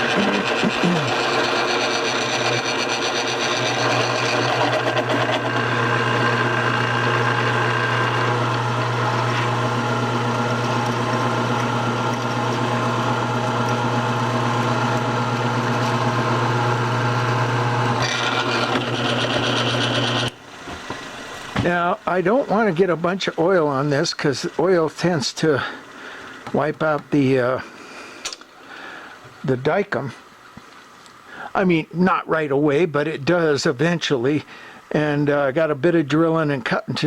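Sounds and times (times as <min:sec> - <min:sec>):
drill press motor humming: 0:00.0 - 0:21.6.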